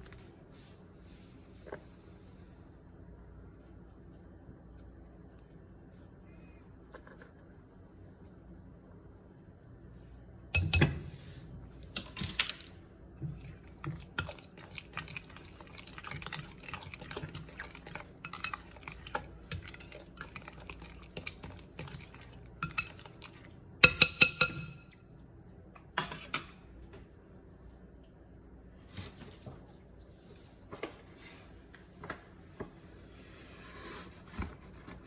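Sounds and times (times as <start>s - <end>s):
utensils clinking against dishes: 13.4s - 25.0s.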